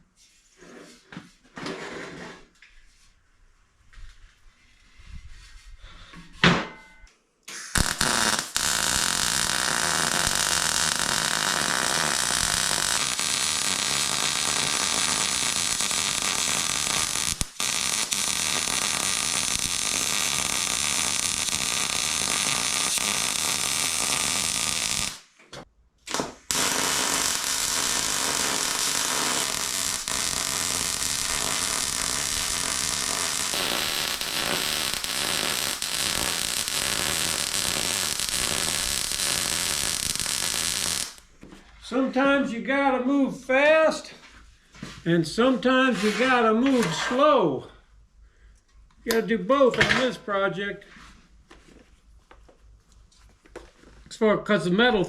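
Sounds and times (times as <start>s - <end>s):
welding arc crackling hiss: 7.5s - 25.3s, 26.1s - 41.3s.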